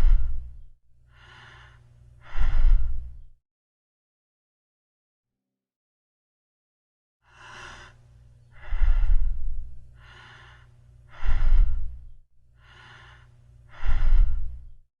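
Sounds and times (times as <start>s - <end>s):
lung breath sounds through stethoscope: 0.0s - 3.3s, 7.3s - 14.8s
low steady hum: 0.0s - 3.4s, 7.3s - 14.8s.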